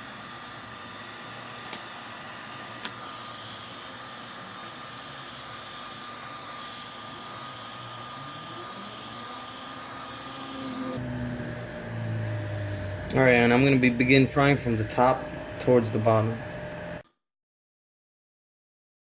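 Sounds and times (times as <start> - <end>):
hot-air blower fan whine: 0.0 - 17.0.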